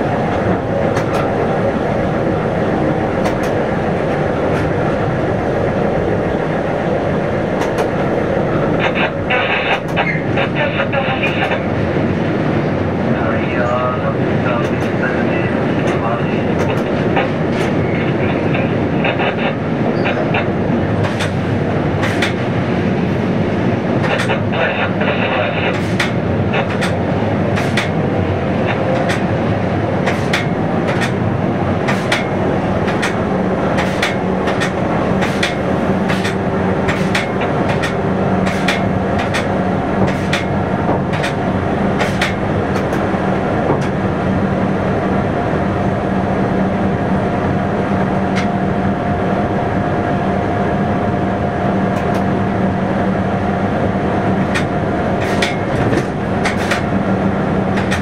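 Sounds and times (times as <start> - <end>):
train running noise and hum: 0.0 - 58.0
wheels clicking over rail joints: 30.0 - 43.1, 54.4 - 56.9, 57.7 - 58.0.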